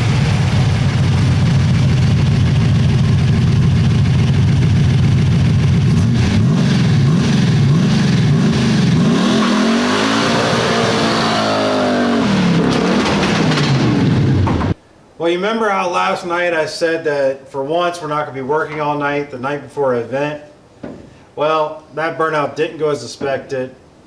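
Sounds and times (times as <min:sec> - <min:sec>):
pickup engine revving hard: 0:05.8 - 0:14.4.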